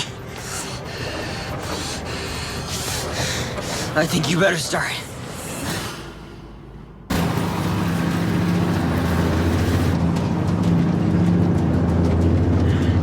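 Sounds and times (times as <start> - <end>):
car engine running: 6.4 - 13.0.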